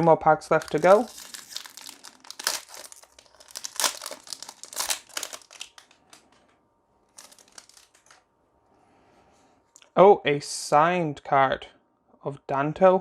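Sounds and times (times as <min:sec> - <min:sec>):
foil wrapper crinkling and tearing: 0:00.5 - 0:06.4, 0:07.1 - 0:08.2.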